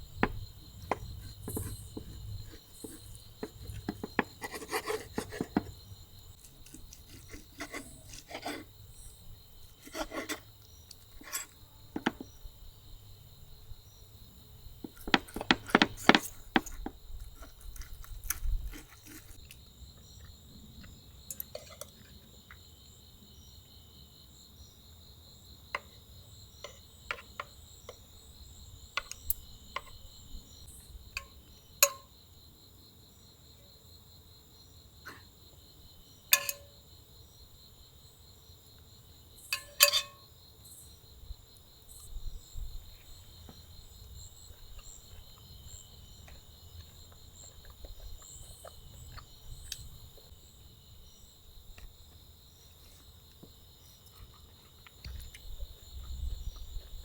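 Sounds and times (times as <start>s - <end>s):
insects trilling: 0.0s - 57.0s
sharp clicks and clinks: 36.3s - 36.7s, 39.5s - 40.2s.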